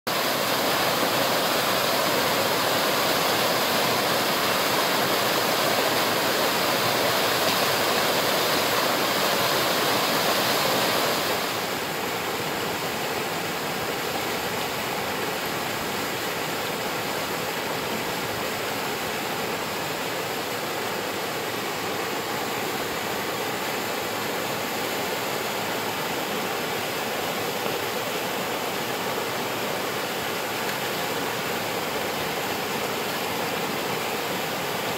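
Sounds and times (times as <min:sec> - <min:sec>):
waterfall pouring and splashing: 0:00.1 - 0:34.9.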